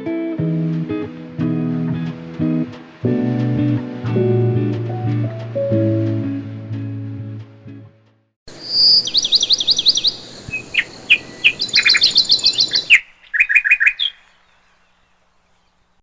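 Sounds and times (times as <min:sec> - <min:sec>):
songbird chirping: 0:08.5 - 0:16.0.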